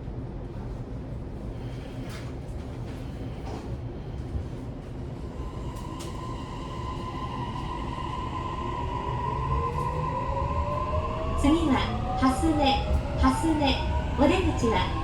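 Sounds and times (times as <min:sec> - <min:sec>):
train inverter whine: 0:00.5 - 0:15.0.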